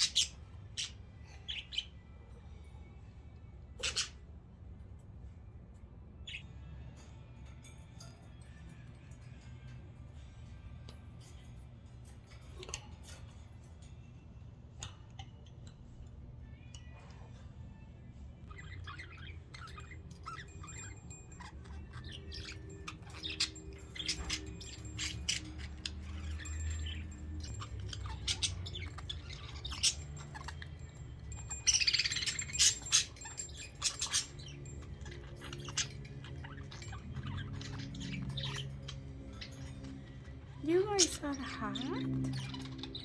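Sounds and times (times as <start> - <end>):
budgerigars chirping and chattering: 0.0 - 2.2, 3.7 - 4.4, 16.6 - 43.0.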